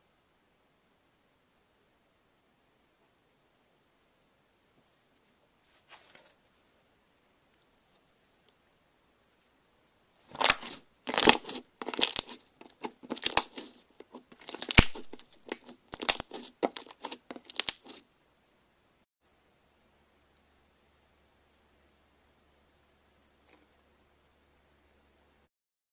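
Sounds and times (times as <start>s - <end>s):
slime crackling and popping: 10.3s - 18.0s.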